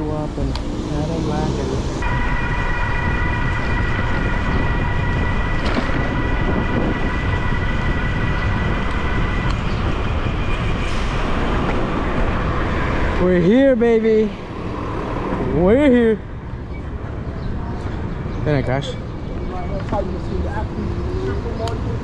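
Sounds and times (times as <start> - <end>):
high tonal whine: 0.0 - 13.7
wind and road rush: 0.0 - 22.0.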